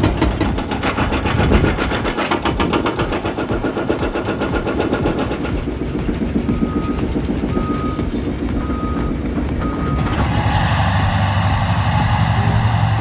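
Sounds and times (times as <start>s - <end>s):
diesel engine running: 0.0s - 13.0s
reversing beep: 6.6s - 10.1s.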